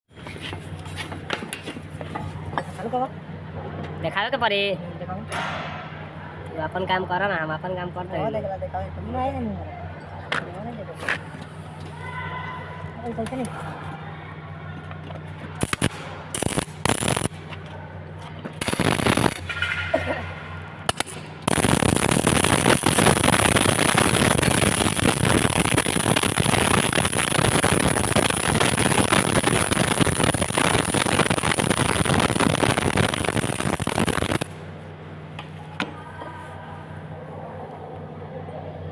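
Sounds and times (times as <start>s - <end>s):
welding arc crackling: 15.6s - 17.5s, 18.6s - 34.6s.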